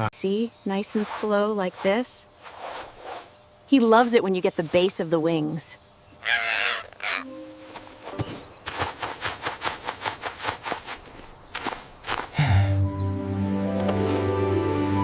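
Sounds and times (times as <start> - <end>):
background music: 7.2 - 8.4, 12.4 - 15.0.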